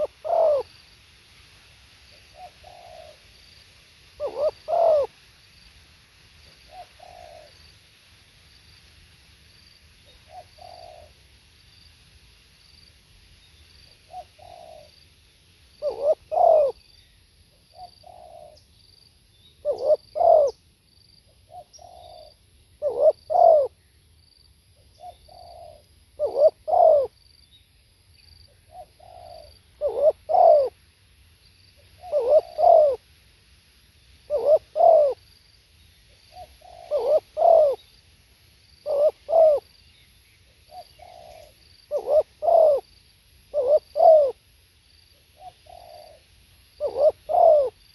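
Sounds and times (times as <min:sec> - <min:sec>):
dove cooing: 0:00.0 - 0:00.7, 0:02.3 - 0:03.2, 0:04.2 - 0:05.1, 0:06.7 - 0:07.6, 0:10.2 - 0:11.2, 0:14.1 - 0:14.9, 0:15.8 - 0:16.8, 0:17.7 - 0:18.6, 0:19.6 - 0:20.6, 0:21.5 - 0:23.8, 0:25.0 - 0:27.1, 0:28.7 - 0:30.8, 0:31.9 - 0:33.0, 0:34.3 - 0:35.2, 0:36.3 - 0:37.9, 0:38.8 - 0:39.7, 0:40.7 - 0:42.9, 0:43.5 - 0:44.4, 0:45.4 - 0:46.2, 0:46.8 - 0:47.9
faint high bird chirps: 0:15.8 - 0:20.6, 0:24.8 - 0:30.8, 0:31.4 - 0:33.0, 0:34.3 - 0:38.0, 0:38.8 - 0:42.8.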